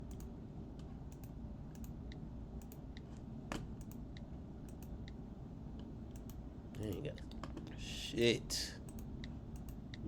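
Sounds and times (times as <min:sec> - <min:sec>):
computer keys clicking: 0:00.0 - 0:00.3, 0:01.1 - 0:03.1, 0:03.8 - 0:05.2, 0:06.1 - 0:07.4, 0:08.8 - 0:10.0
low steady hum: 0:00.0 - 0:10.0.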